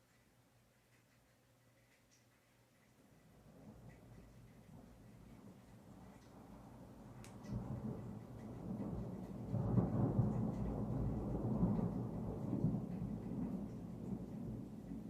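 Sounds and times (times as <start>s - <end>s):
low rumble of thunder: 3.4s - 15.0s
rain: 3.4s - 15.0s.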